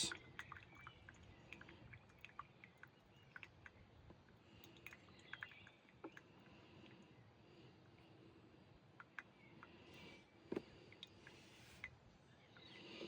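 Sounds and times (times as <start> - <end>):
coffee dripping into cup: 0.0 - 7.2, 8.9 - 9.8.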